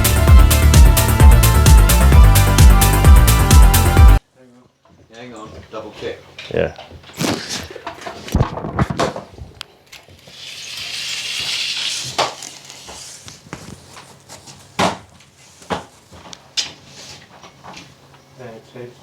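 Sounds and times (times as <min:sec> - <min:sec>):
drywall ceiling crumbling down: 0:07.1 - 0:13.9.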